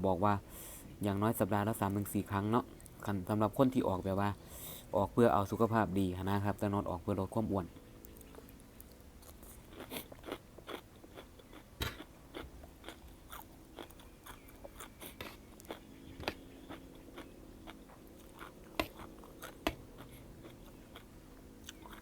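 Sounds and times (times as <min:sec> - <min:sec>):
crunching and wet chewing: 0:01.6 - 0:03.8, 0:07.8 - 0:22.0.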